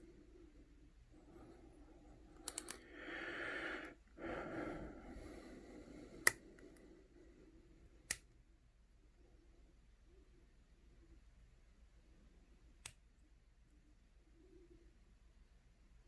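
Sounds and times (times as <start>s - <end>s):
lock picks clicking in padlock: 2.4s - 2.8s.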